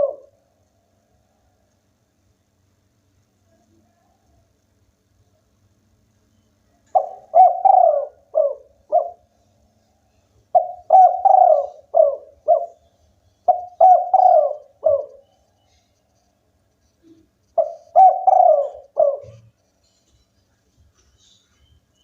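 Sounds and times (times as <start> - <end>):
dove cooing: 0.0 - 0.4, 6.9 - 9.3, 10.5 - 12.8, 13.5 - 15.3, 17.1 - 19.5.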